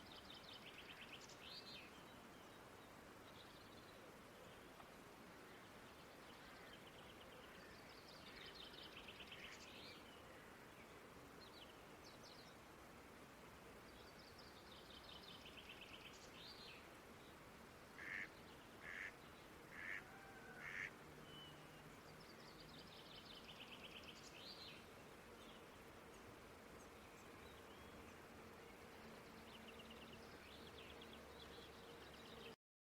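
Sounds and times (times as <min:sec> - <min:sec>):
open air hiss: 0:00.0 - 0:32.6
short loud bird calls: 0:18.0 - 0:21.5.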